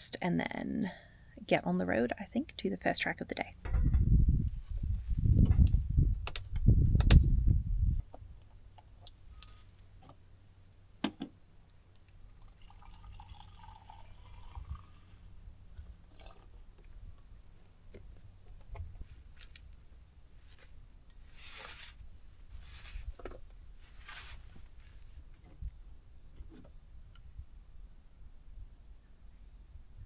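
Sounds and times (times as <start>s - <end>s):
liquid pouring: 12.3s - 15.2s, 16.1s - 16.5s.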